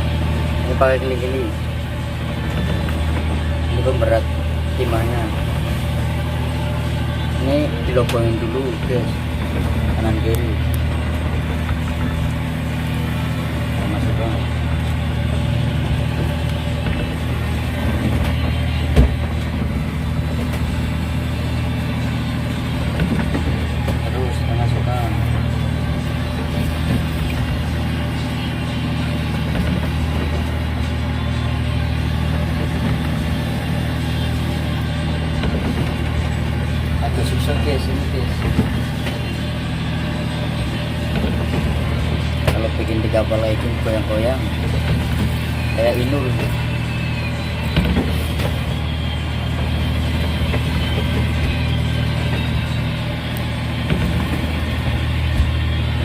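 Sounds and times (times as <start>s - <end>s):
boat engine droning: 0.0s - 56.0s.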